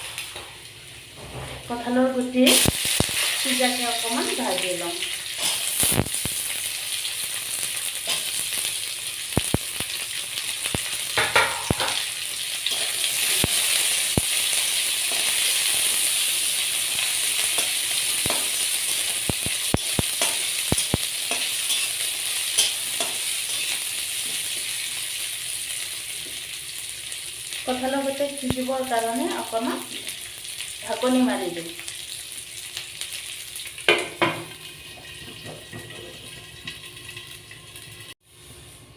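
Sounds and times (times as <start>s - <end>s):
seeds frying in hot oil: 0.0s - 38.9s
sharp clicks in frying oil: 2.5s - 3.4s, 5.4s - 6.7s, 7.6s - 16.0s, 17.0s - 24.7s, 32.7s - 36.0s.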